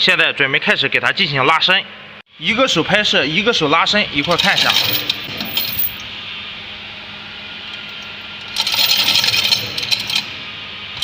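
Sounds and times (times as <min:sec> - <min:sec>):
metallic scraping and clicking: 0:04.3 - 0:06.0.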